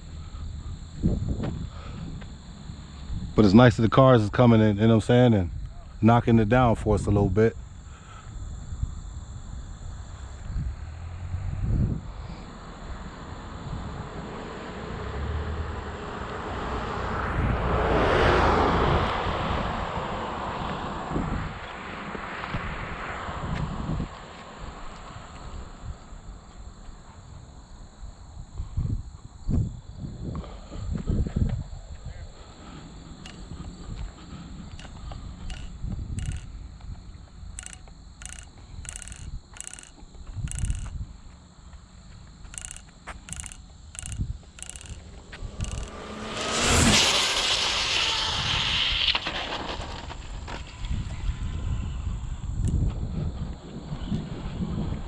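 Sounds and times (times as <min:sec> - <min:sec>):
insects droning: 0:00.0 - 0:55.0
vehicle passing by: 0:10.2 - 0:25.6, 0:43.4 - 0:50.6.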